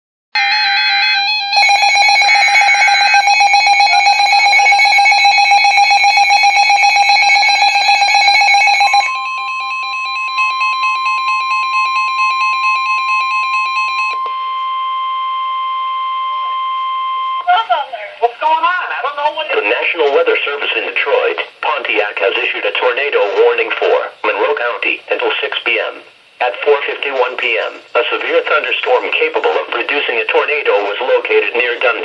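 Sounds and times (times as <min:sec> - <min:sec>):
steady single-pitched warning tone: 0:00.4 - 0:17.6
rapidly pulsing electronic alarm beep: 0:00.4 - 0:18.0.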